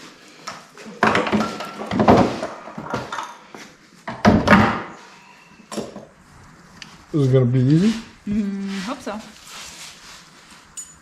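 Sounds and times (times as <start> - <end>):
metal parts and tools clattering: 10.7 - 11.0.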